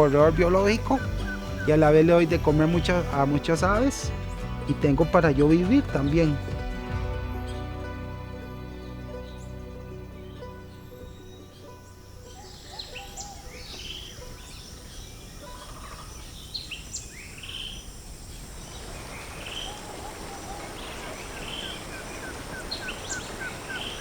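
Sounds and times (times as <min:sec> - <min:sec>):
birds chirping and whistling: 0:00.0 - 0:24.0
steady hiss: 0:16.0 - 0:24.0.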